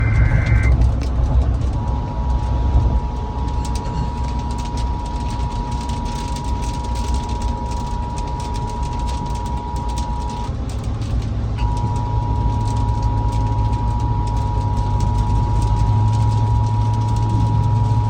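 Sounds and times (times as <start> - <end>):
two-tone alert signal: 0.0 - 0.8
low vehicle rumble: 0.0 - 18.0.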